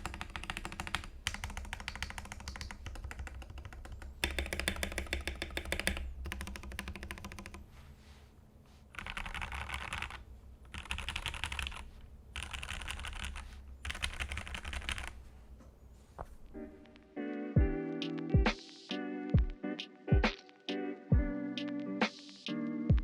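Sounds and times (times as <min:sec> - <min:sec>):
mechanical keyboard typing: 0:00.0 - 0:07.6, 0:08.9 - 0:15.2.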